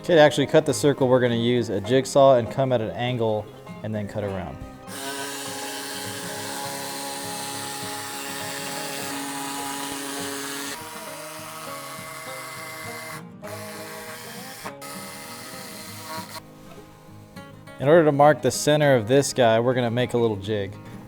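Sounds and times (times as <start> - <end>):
background music: 0.0 - 21.0
electric jigsaw cutting wood: 4.9 - 17.4.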